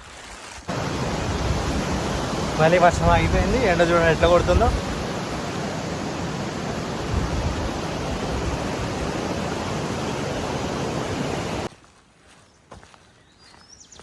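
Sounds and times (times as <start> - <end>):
flowing water rushing: 0.7 - 11.7.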